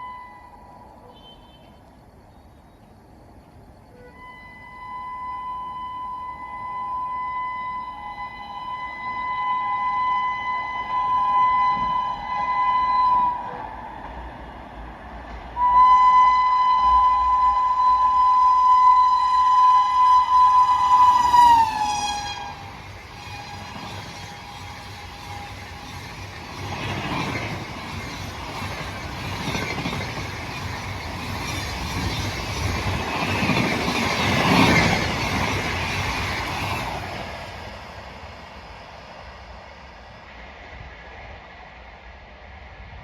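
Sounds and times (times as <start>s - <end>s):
shrill locomotive horn: 0.0s - 1.8s, 3.9s - 13.9s, 15.6s - 25.9s
train coaches rushing past: 18.4s - 43.0s.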